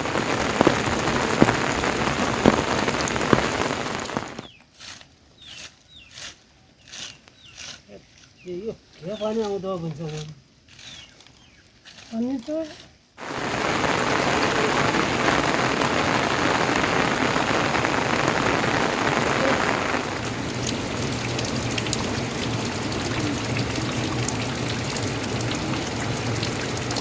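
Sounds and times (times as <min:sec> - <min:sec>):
heavy rain falling: 0:00.0 - 0:04.5, 0:13.2 - 0:27.0.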